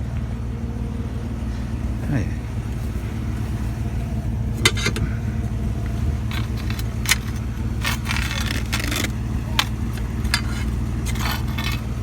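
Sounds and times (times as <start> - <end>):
vehicle engine idling: 0.0 - 12.0
metallic clinks and rattles: 4.6 - 12.0.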